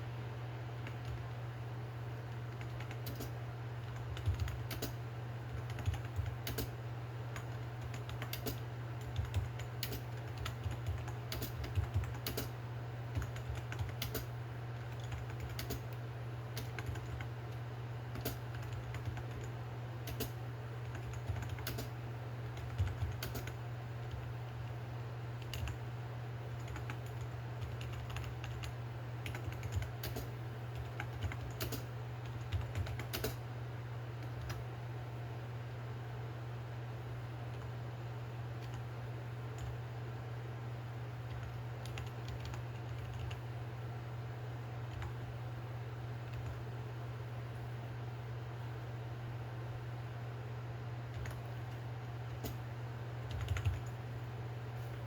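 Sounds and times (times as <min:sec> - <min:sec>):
steady low hum: 0:00.0 - 0:55.0
keyboard keys clacking: 0:05.6 - 0:06.7, 0:53.3 - 0:53.9.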